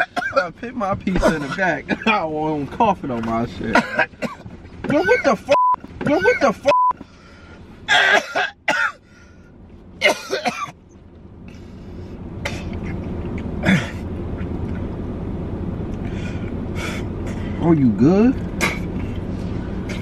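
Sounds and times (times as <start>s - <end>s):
man coughing harshly: 0.0s - 0.5s, 1.2s - 2.2s, 3.7s - 6.7s, 7.9s - 9.0s, 10.0s - 10.8s, 13.6s - 14.0s, 18.6s - 19.0s
steady low hum: 0.0s - 20.0s.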